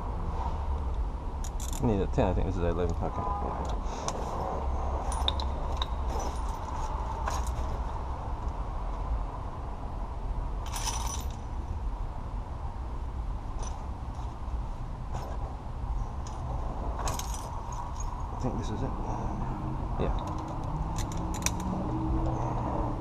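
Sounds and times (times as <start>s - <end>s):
metal tools clinking: 1.4s - 1.9s, 5.0s - 7.9s, 10.6s - 11.4s, 16.1s - 18.4s, 20.1s - 21.8s.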